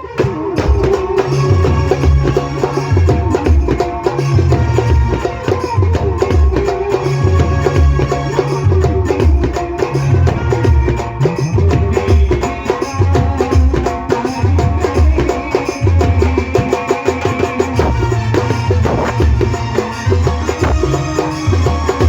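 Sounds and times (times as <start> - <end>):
steady drum beat: 0.0 - 22.0
repeating bass line: 17.8 - 22.0.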